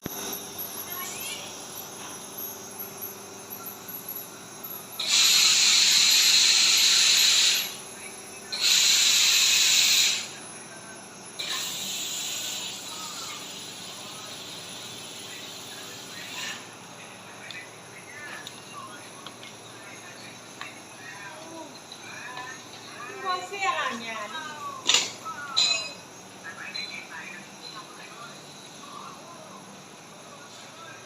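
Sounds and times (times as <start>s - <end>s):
compressed air hissing: 5.0s - 7.8s, 8.5s - 10.4s, 11.4s - 16.7s.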